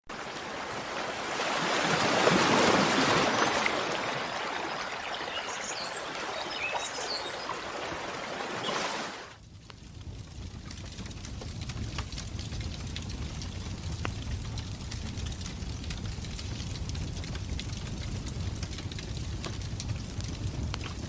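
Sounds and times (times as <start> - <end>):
fire crackling: 9.4 - 21.0
wood fire hissing: 9.6 - 21.0.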